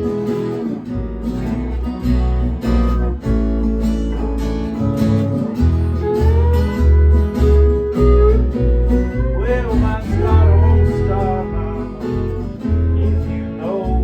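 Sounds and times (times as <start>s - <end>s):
blues guitar lead notes: 0.0s - 14.0s
repeating low bass line: 0.0s - 14.0s.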